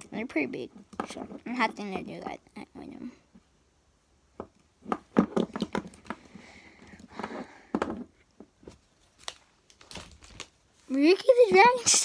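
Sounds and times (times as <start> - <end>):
plastic figures knocking and clattering: 4.4 - 8.8.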